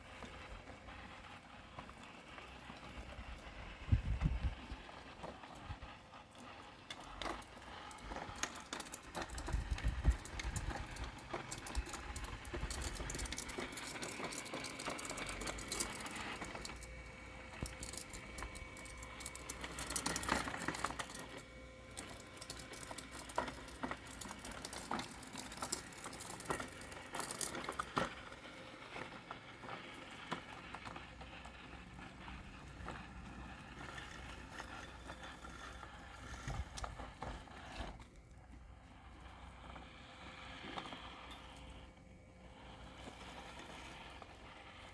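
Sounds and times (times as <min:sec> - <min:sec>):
robotic lawn mower motor whine: 0:00.0 - 0:44.9
small clicks and rattles: 0:06.4 - 0:38.2.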